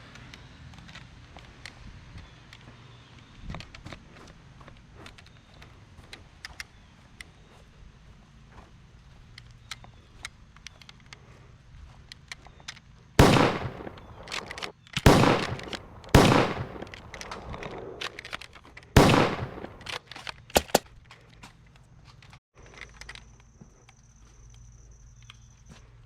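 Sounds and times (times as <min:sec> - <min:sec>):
sharp clicks: 0:12.2 - 0:20.8
loud sharp bangs: 0:13.2 - 0:18.4, 0:19.0 - 0:20.0, 0:20.6 - 0:20.8
small scattered ticks: 0:21.1 - 0:26.0.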